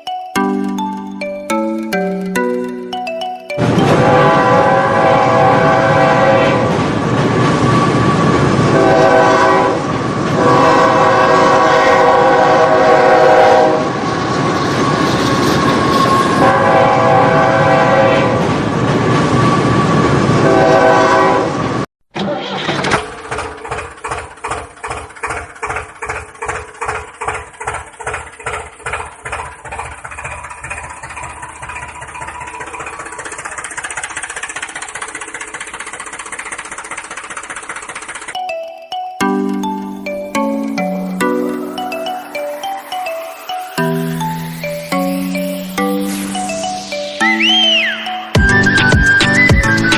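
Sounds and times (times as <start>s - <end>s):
train horn blasts: 3.6s - 7.0s, 7.7s - 14.1s, 16.0s - 18.6s, 20.4s - 21.8s
train rumbling: 3.6s - 21.9s, 22.8s - 38.5s
rhythmic clacking of wheels: 23.0s - 47.2s.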